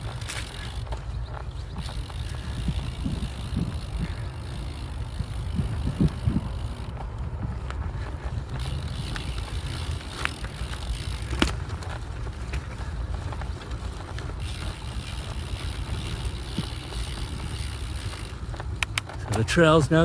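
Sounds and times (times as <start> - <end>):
vehicle rumbling on unpaved trail: 0.0 - 20.0
sharp clicks and ticks: 8.4 - 20.0.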